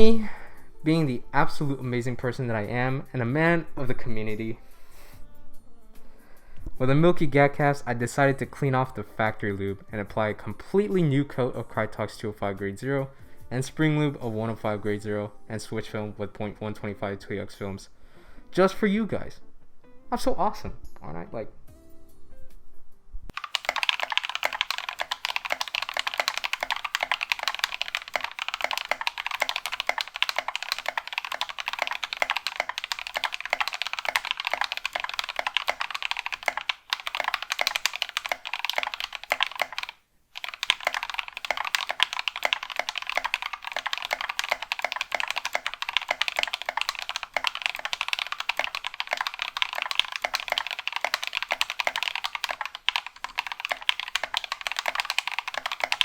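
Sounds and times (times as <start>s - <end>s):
fast typing on mechanical keyboard: 23.3s - 56.0s.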